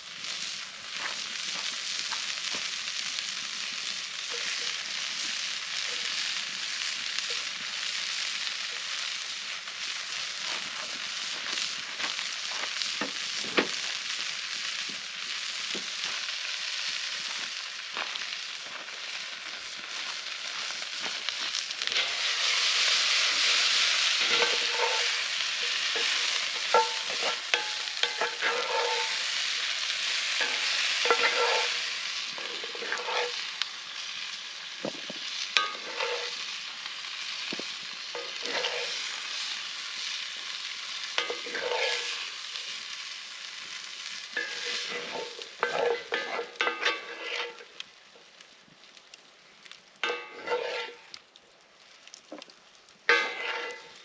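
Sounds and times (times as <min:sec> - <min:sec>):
food sizzling in a frying pan: 0:00.0 - 0:54.0
metal utensil scraping a pan: 0:04.3 - 0:04.8, 0:21.8 - 0:33.5, 0:35.6 - 0:36.6, 0:38.1 - 0:39.6, 0:41.0 - 0:42.3, 0:44.4 - 0:47.7, 0:50.0 - 0:51.2, 0:53.1 - 0:54.0.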